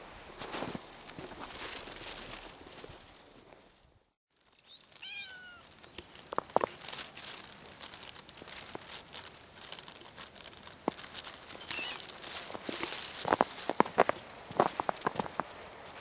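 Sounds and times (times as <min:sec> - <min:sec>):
rustling: 0:00.0 - 0:16.0
cat chirp: 0:04.6 - 0:05.7, 0:11.6 - 0:12.0
cat meowing: 0:05.0 - 0:05.7, 0:11.6 - 0:12.0.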